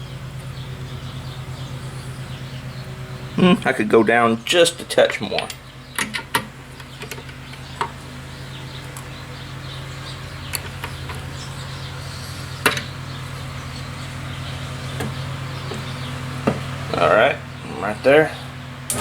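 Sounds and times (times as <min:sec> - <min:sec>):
drill press motor running: 0:00.0 - 0:19.0
sharp clicks or knocks: 0:05.4 - 0:07.9.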